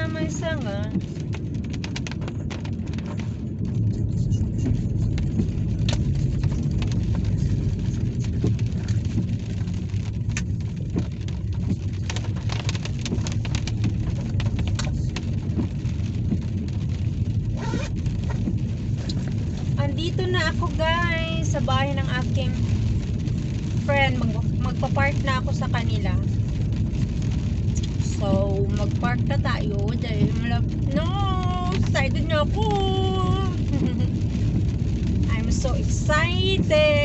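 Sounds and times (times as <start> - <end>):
raindrops ticking on windscreen: 0.0 - 37.0
road and engine rumble: 0.0 - 37.0.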